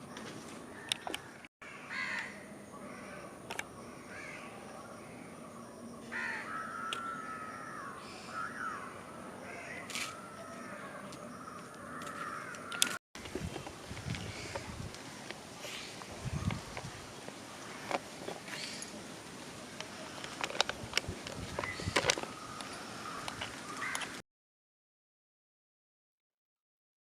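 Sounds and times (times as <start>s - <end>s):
crows cawing: 0.8s - 3.3s, 4.0s - 4.5s, 6.1s - 13.0s, 22.3s - 24.2s.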